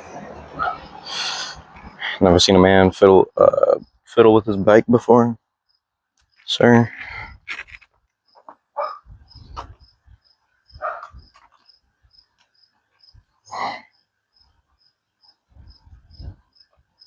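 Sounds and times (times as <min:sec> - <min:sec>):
cricket chirping: 0:05.6 - 0:17.0.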